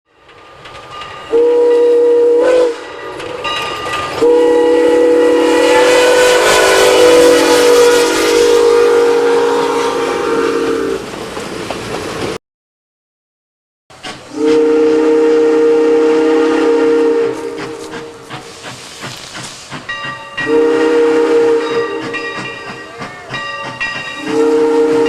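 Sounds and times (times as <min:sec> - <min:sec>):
rumble of moving train: 0:00.1 - 0:12.4, 0:13.9 - 0:25.0
steam whistle blasts: 0:01.3 - 0:02.9, 0:04.2 - 0:11.0, 0:14.1 - 0:18.2, 0:20.4 - 0:22.5, 0:23.6 - 0:25.0.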